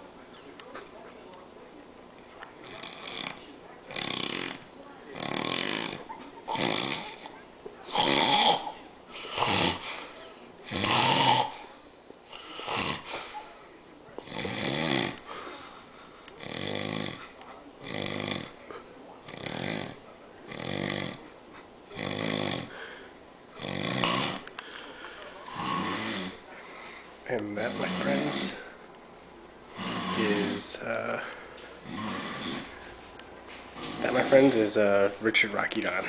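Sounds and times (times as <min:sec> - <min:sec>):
man snoring loudly: 0:02.7 - 0:07.2, 0:07.9 - 0:08.7, 0:09.3 - 0:09.8, 0:10.7 - 0:11.6, 0:12.5 - 0:13.1, 0:14.2 - 0:15.2, 0:16.4 - 0:17.2, 0:17.8 - 0:18.6, 0:19.3 - 0:21.2, 0:22.0 - 0:22.7, 0:23.6 - 0:24.4, 0:25.5 - 0:26.4, 0:27.6 - 0:28.6, 0:29.8 - 0:30.8, 0:31.8 - 0:32.7.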